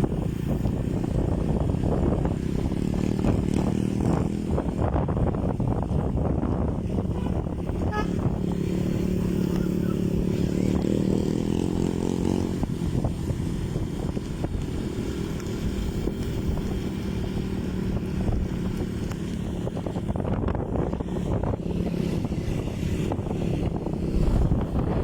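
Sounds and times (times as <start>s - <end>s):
wind noise on microphone: 0.0s - 25.0s.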